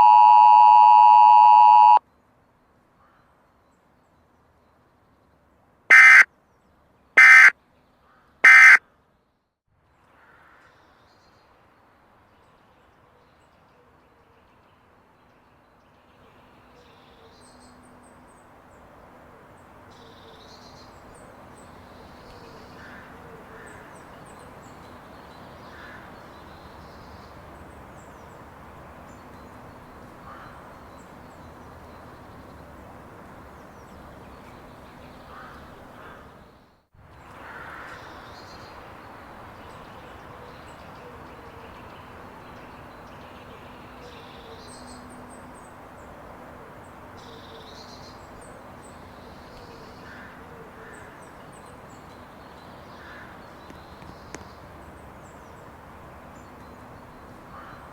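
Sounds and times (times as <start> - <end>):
outdoor ambient noise: 0.0 - 57.9
short bird calls: 5.9 - 6.2, 7.2 - 7.5, 8.4 - 8.8.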